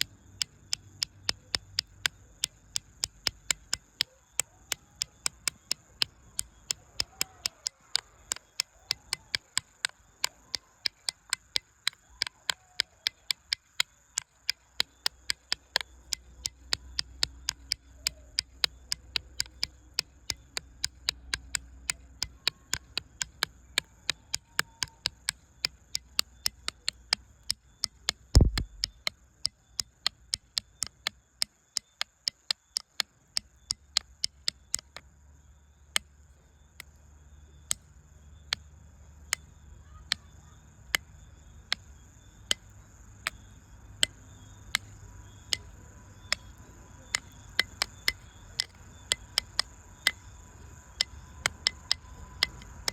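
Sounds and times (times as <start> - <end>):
sharp regular clicks: 0.0 - 52.9
heavy low thump: 28.4 - 28.8.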